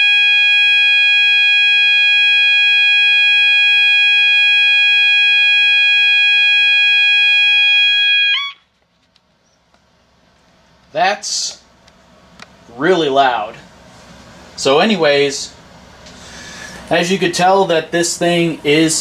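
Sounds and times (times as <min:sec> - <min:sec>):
alarm chirp: 0:00.0 - 0:08.7
fire alarm electronic tone: 0:00.0 - 0:08.7.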